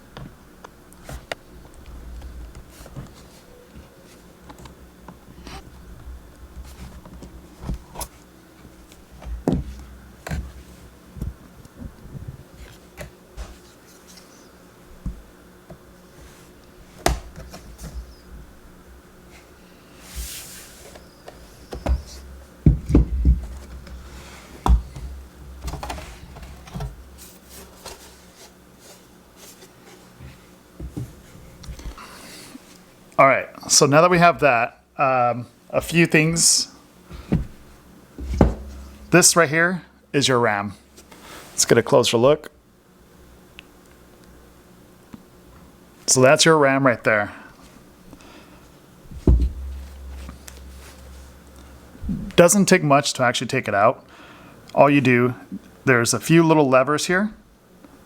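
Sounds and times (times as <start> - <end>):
heavier knocks: 38.2 - 39.2, 49.1 - 52.4.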